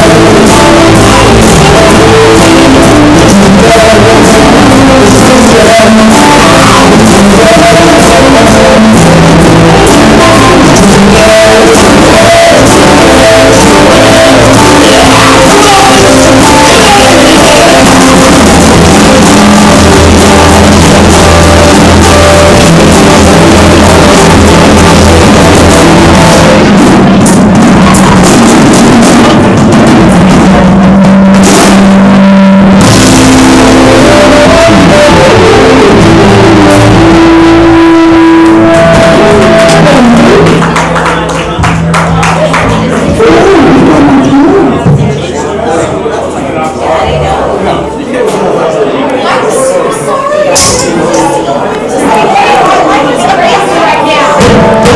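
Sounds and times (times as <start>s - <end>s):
loud rock band playing: 0.0s - 41.0s
sung or shouted vocals: 0.0s - 54.9s.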